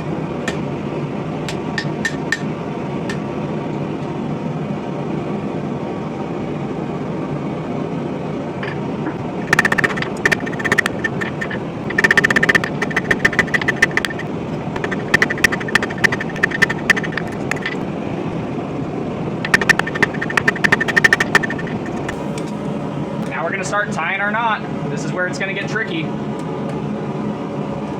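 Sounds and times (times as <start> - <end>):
steady background roar: 6.9 - 27.9.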